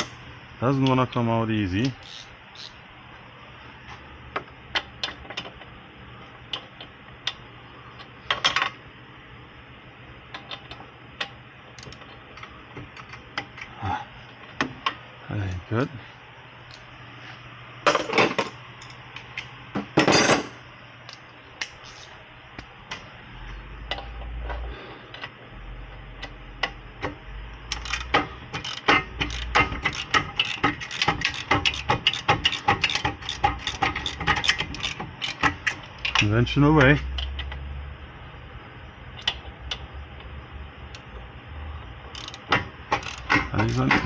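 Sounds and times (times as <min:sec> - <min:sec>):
ratchet wrench clicking: 0:01.8 - 0:02.8, 0:27.7 - 0:36.4, 0:42.1 - 0:44.0.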